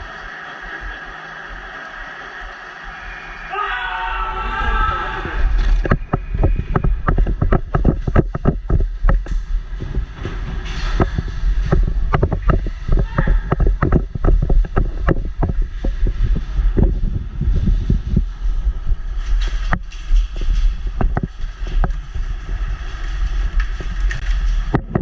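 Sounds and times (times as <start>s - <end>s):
heavy low rumble: 0.0s - 25.0s
sharp clicks and knocks: 5.6s - 16.9s.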